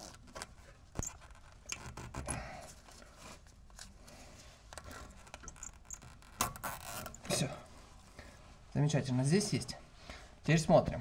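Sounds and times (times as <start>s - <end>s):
zip tie clicking: 0.0s - 2.4s, 4.8s - 7.3s.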